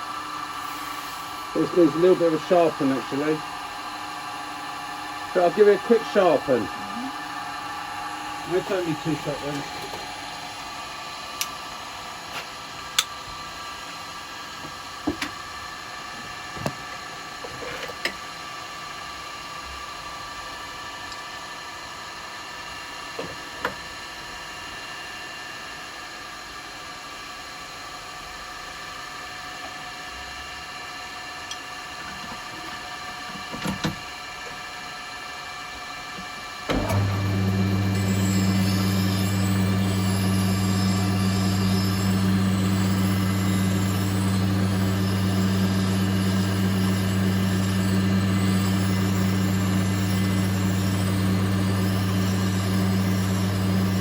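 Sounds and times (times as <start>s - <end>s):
workshop machine hum: 0.0s - 24.9s, 28.7s - 54.0s
low motor hum: 36.7s - 54.0s.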